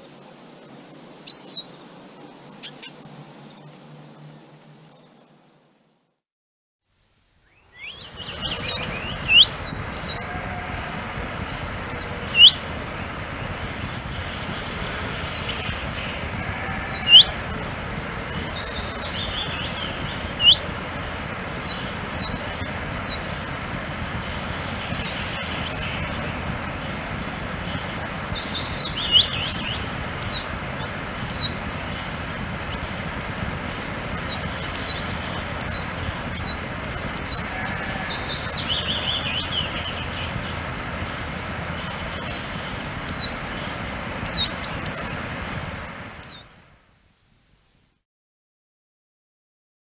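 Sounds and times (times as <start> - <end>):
background hiss: 0.0 - 6.0, 6.9 - 48.0
chaffinch calling: 1.2 - 1.9, 2.5 - 3.6, 7.5 - 10.7, 11.4 - 12.6, 15.1 - 20.7, 21.6 - 23.4, 24.9 - 26.4, 27.2 - 33.6, 34.2 - 40.6, 41.3 - 43.5, 44.2 - 45.1, 46.2 - 46.4.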